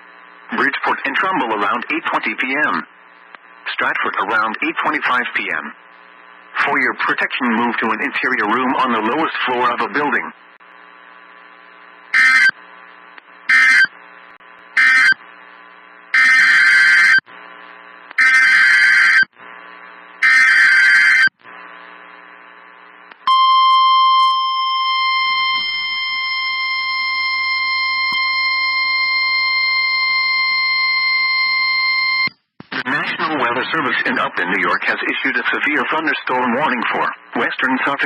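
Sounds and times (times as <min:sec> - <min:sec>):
steady alarm tone: 0:12.2 - 0:12.5, 0:13.5 - 0:13.9, 0:14.8 - 0:15.2, 0:16.2 - 0:17.2, 0:18.2 - 0:19.3, 0:20.2 - 0:21.3.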